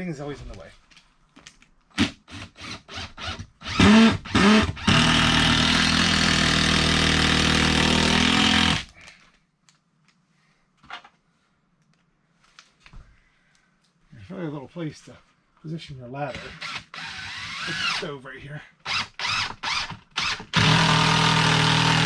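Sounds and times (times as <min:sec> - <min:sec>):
power drill running: 0:02.0 - 0:08.9, 0:16.3 - 0:18.1, 0:18.9 - 0:22.0.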